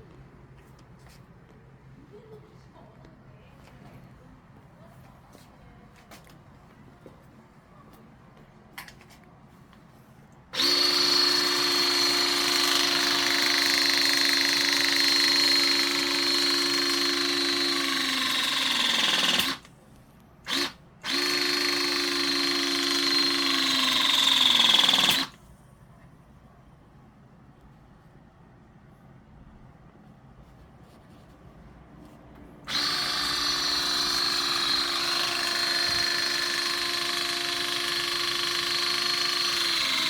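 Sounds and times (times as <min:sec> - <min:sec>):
power tool motor whining: 0:10.6 - 0:19.7, 0:20.5 - 0:25.4, 0:32.7 - 0:40.0.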